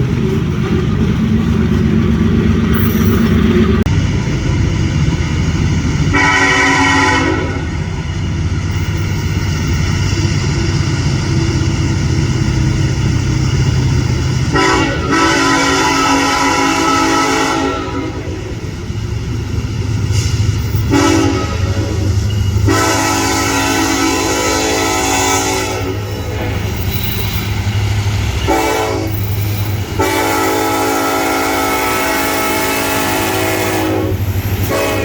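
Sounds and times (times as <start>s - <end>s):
low rumble of passing train: 0.0s - 35.0s
locomotive air horn blasts: 6.1s - 7.9s, 14.5s - 18.5s, 20.1s - 26.6s, 28.4s - 29.3s, 30.0s - 35.0s.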